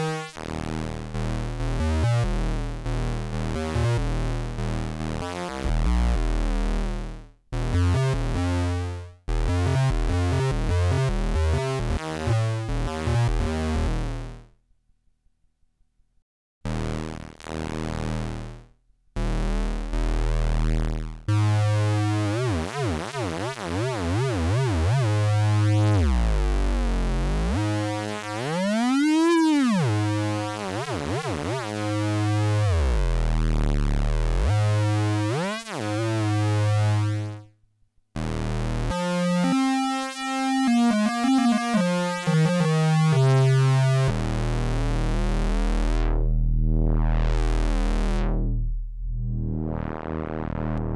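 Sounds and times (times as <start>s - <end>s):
buzzy analog synthesizer notes: 9.3s - 14.4s, 16.7s - 22.6s, 24.2s - 37.4s, 38.2s - 50.9s.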